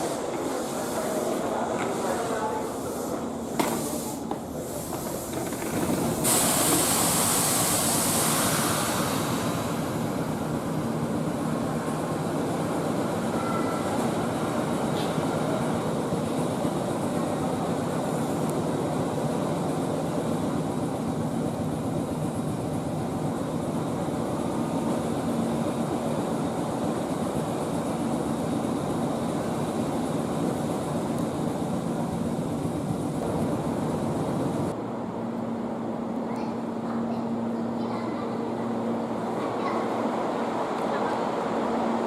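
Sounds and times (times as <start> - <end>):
train rumbling on rails: 0.0 - 42.0
hissing burst: 6.0 - 9.9.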